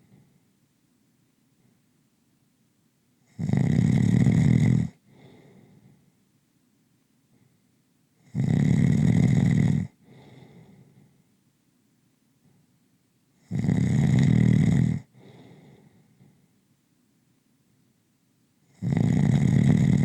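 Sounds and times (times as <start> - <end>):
person snoring: 3.4 - 5.0, 8.3 - 10.4, 13.5 - 15.1, 18.8 - 20.0.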